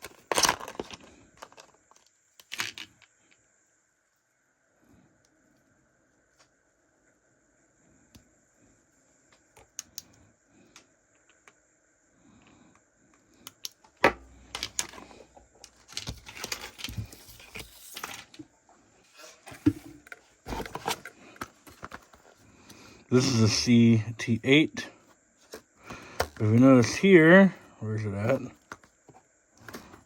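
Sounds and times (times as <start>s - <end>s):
plastic packaging rustling: 19.1s - 22.4s.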